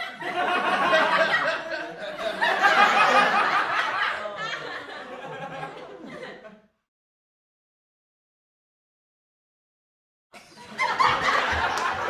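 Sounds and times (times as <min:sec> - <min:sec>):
studio audience laughing: 0:00.0 - 0:06.8, 0:10.4 - 0:12.0.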